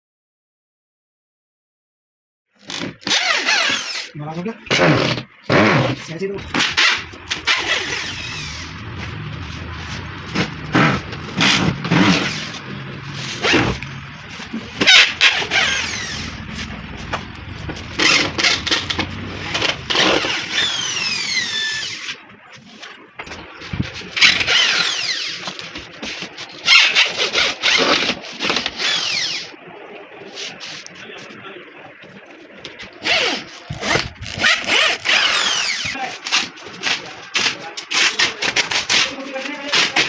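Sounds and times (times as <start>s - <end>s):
scraping: 2.6s - 29.4s
high-pitched squeaks: 2.8s - 22.2s.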